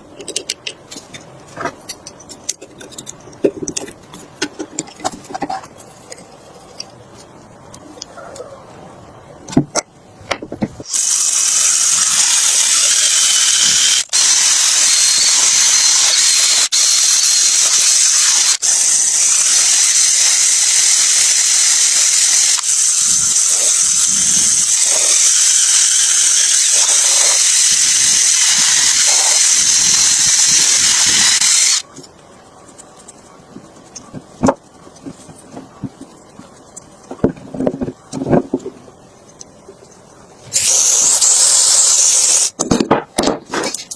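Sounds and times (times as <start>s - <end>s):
high-pressure jet hissing: 10.9s - 31.8s, 40.6s - 42.5s.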